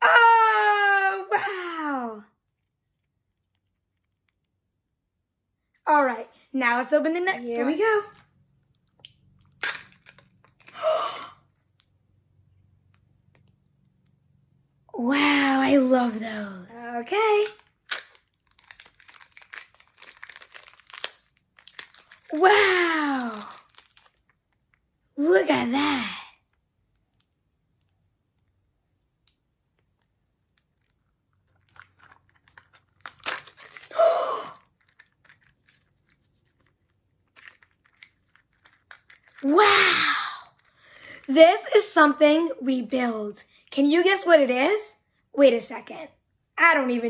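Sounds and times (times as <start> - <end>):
child gasping: 10.7 - 11.4
plastic toys clicking: 37.4 - 39.5.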